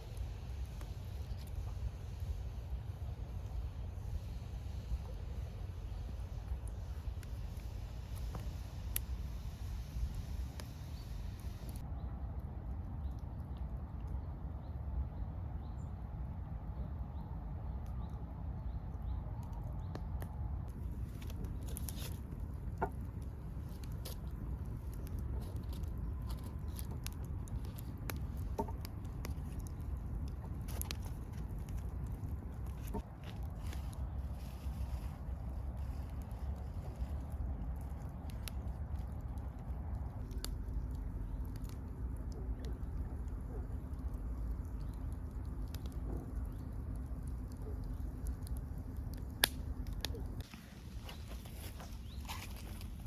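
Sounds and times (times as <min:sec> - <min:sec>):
faint clicks and crackles: 0:17.7 - 0:53.0
sharp fire pops: 0:47.7 - 0:52.9.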